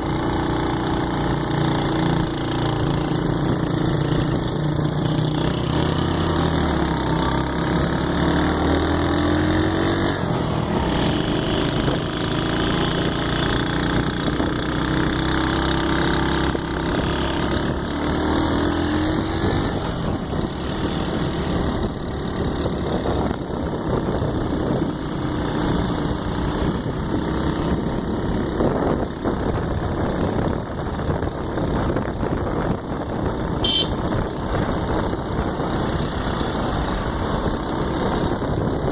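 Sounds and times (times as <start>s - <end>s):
vehicle engine revving: 1.0s - 12.9s, 33.6s - 38.7s.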